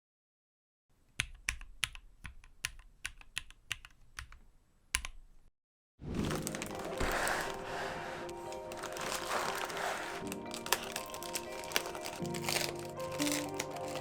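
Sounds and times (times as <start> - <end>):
mechanical keyboard keystrokes: 1.1 - 5.3
music: 6.0 - 14.0.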